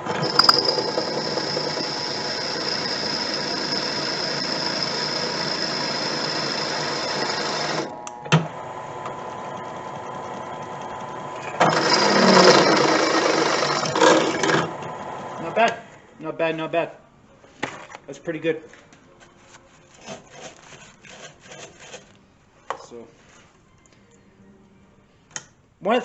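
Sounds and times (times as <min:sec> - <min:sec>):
drill bit cutting metal: 0:00.0 - 0:07.9, 0:09.6 - 0:14.5
drill press motor running: 0:00.0 - 0:15.4
click: 0:25.3 - 0:25.5.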